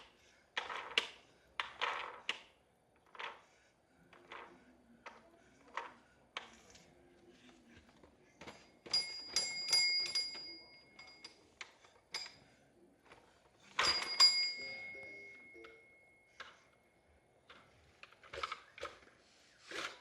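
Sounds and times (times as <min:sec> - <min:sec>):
small metal bell ringing: 0:08.9 - 0:11.4, 0:13.8 - 0:16.3.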